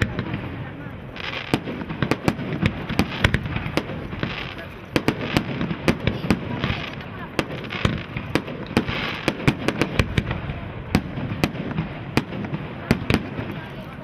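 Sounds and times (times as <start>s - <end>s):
crackling hiss: 0.0s - 14.0s
fireworks bangs and pops: 0.0s - 14.0s.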